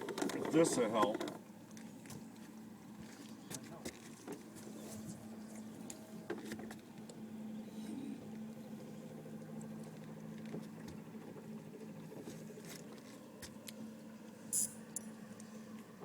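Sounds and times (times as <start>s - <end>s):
low hum: 4.5s - 16.0s.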